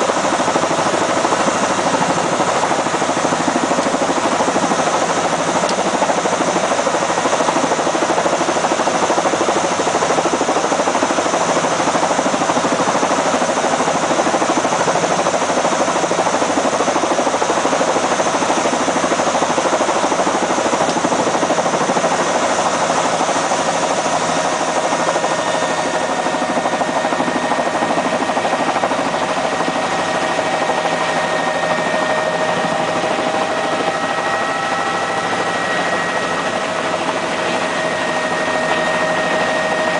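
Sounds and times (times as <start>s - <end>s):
helicopter rotor and engine: 0.0s - 39.9s
steady whine: 20.8s - 39.9s.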